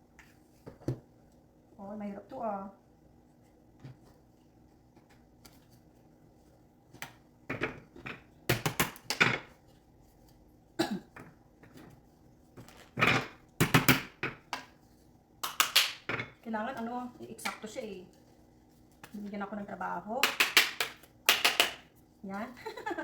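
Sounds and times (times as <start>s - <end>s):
wooden pieces knocking: 20.2s - 21.9s.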